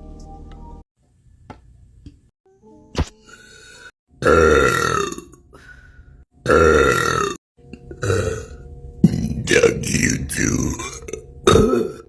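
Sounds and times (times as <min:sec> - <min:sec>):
person belching: 0:04.2 - 0:05.4, 0:06.5 - 0:12.0.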